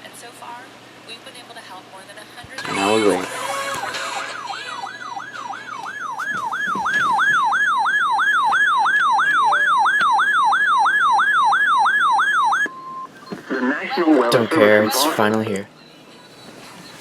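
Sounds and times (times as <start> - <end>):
electronic siren alarm whooping: 2.6 - 13.1
steady single alarm tone: 2.6 - 13.1.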